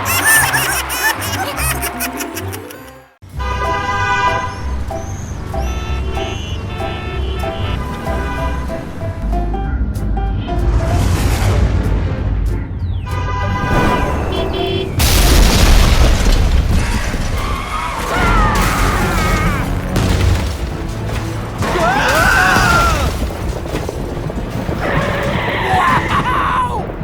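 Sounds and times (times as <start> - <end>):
cartoon sound effects: 0.0 - 2.9
background music: 0.0 - 15.0.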